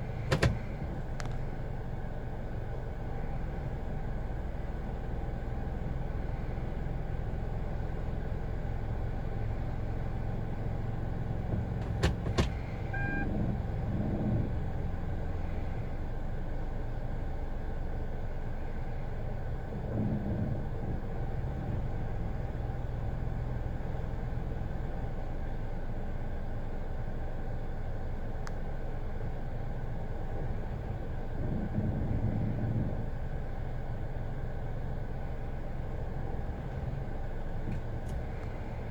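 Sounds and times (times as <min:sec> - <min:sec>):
car engine idling roughly: 0:00.0 - 0:24.9
short beep: 0:12.9 - 0:13.3.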